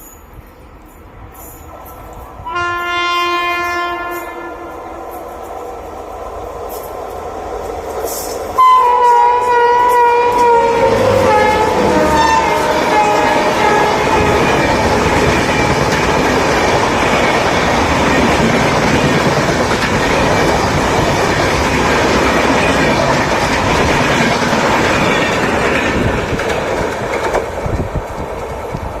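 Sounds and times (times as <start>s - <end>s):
train wheels clattering over rail joints: 10.9s - 29.0s.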